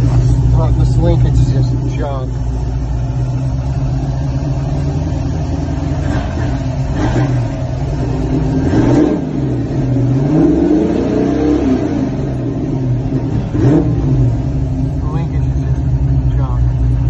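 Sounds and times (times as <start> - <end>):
engine knocking: 0.0 - 9.3, 12.8 - 17.0
engine idling and revving: 0.0 - 17.0.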